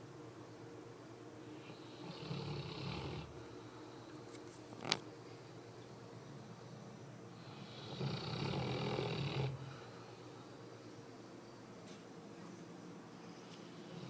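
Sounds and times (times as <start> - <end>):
dog snoring: 1.6 - 3.4, 7.4 - 9.9, 13.7 - 14.0.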